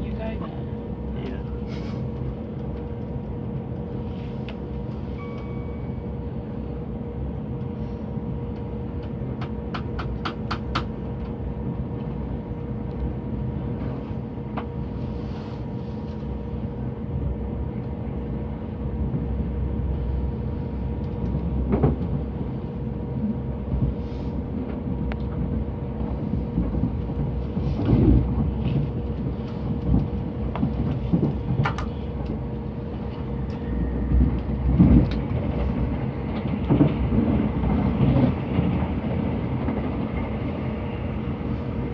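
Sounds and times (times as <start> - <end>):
wheels rumbling on rail: 0.0 - 41.9
thumps and clacks over track: 8.6 - 11.4, 21.0 - 22.2, 24.7 - 32.4, 34.2 - 38.9.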